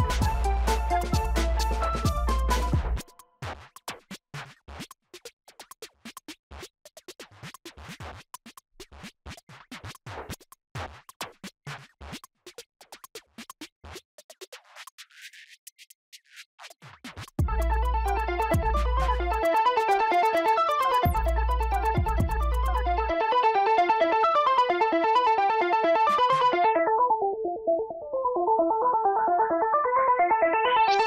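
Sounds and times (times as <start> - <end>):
electronic music with heavy bass: 0.0 - 3.0, 17.4 - 27.0.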